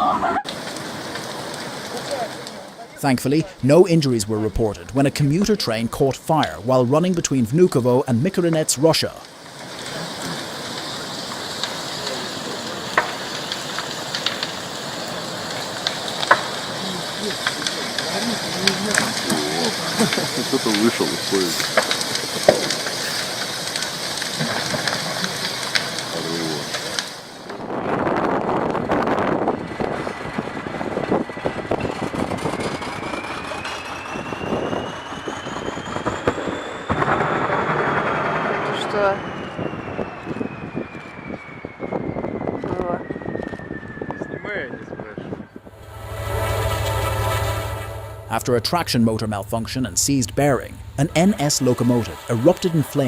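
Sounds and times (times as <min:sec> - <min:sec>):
fire hissing and crackling: 0:00.0 - 0:53.0
thin rising whine: 0:29.0 - 0:37.7, 0:38.6 - 0:52.3.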